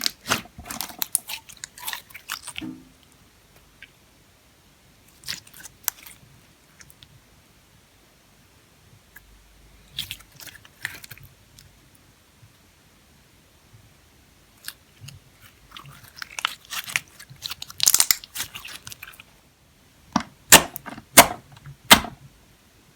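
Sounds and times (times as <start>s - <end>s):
sticky slime clicking: 20.2s - 22.2s
sharp slime snaps: 20.5s - 22.2s.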